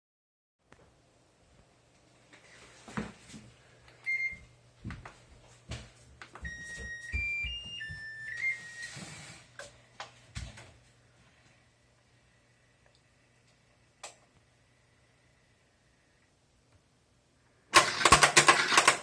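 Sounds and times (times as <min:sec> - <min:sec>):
control panel beep: 0:06.4 - 0:08.8.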